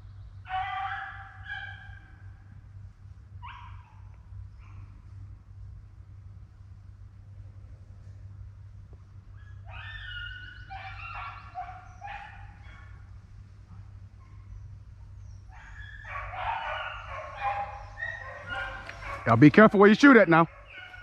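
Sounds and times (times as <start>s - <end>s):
hounds baying: 0.4s - 2.4s, 3.3s - 5.0s, 9.3s - 21.0s.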